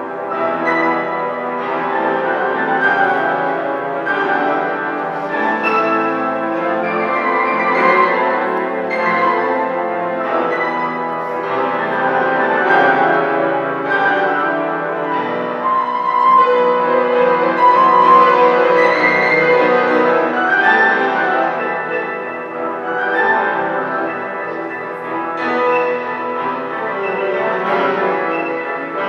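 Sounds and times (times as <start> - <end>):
small ensemble playing instruments: 0.0 - 29.0.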